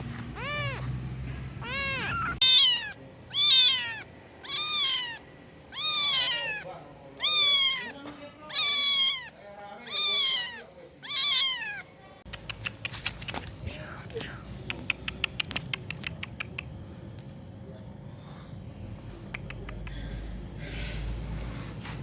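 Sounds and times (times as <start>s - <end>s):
kitten meowing: 0.3s - 0.9s, 1.6s - 11.8s.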